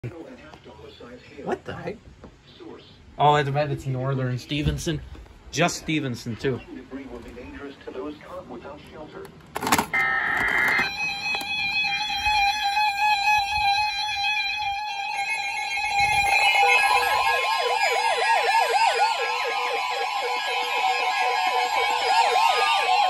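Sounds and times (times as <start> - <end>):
electronic alarm tones: 9.9 - 23.0
warbling siren-like alarm: 9.9 - 23.0.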